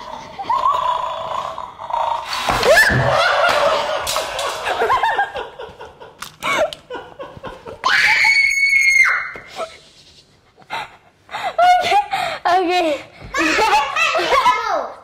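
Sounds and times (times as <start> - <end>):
children shrieking and laughing: 7.8 - 9.4, 13.4 - 15.0
high-pitched scream: 7.8 - 9.4.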